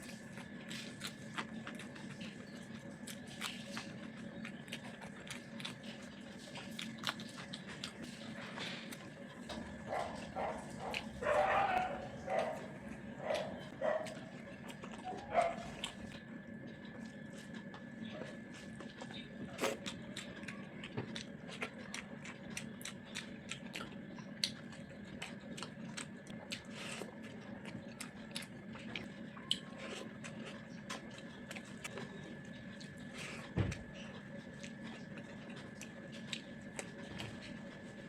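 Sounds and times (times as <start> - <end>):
faint steady hum: 0.0 - 38.0
person chewing with mouth clicks: 10.0 - 16.2, 16.8 - 38.0.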